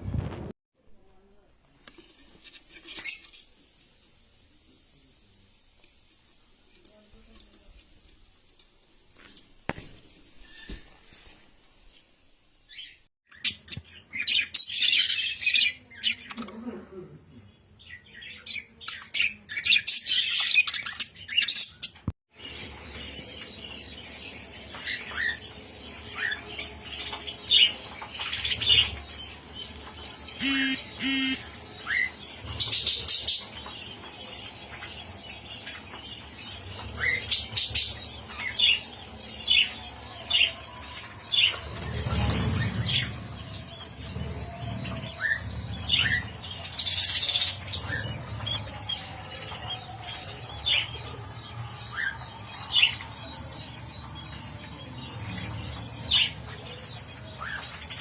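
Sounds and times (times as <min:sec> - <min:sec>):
parrots chirping and squawking: 0:24.7 - 0:33.6.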